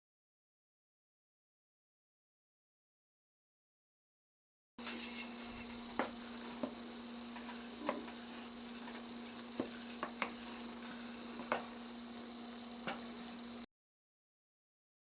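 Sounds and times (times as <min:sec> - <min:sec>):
honey boiling with pops: 0:04.8 - 0:13.6
steady hum: 0:04.8 - 0:13.7.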